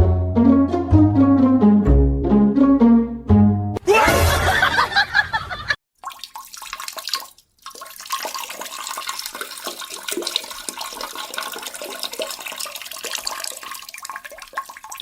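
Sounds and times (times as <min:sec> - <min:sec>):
rushing splashing water: 0:06.0 - 0:15.0.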